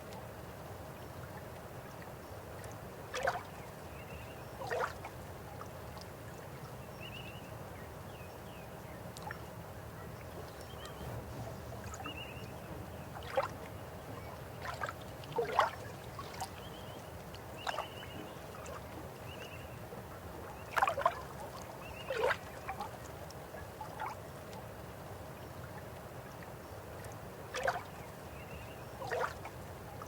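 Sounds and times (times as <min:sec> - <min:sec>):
river water flowing: 0:00.0 - 0:30.0
water gurgles and splashes: 0:03.0 - 0:03.6, 0:04.6 - 0:05.2, 0:12.9 - 0:13.7, 0:14.5 - 0:16.7, 0:20.5 - 0:23.2, 0:27.4 - 0:28.0, 0:29.0 - 0:30.0.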